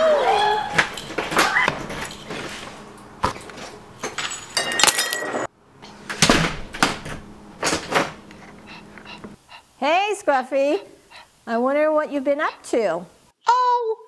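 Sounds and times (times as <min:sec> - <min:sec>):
knocks and clatter of handling: 0:00.8 - 0:05.3.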